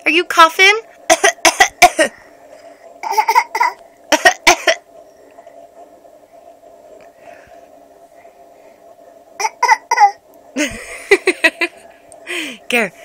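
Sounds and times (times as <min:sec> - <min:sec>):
faint steady hum: 0:00.0 - 0:13.0
child coughing: 0:01.1 - 0:02.1, 0:03.0 - 0:04.8, 0:09.4 - 0:10.2.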